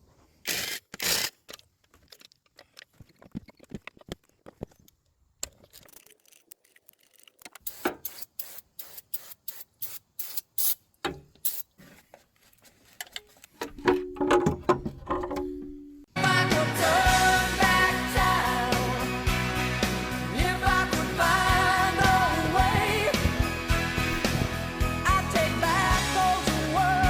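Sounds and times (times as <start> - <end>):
short hissing sprays: 7.7 - 10.8, 11.4 - 11.7.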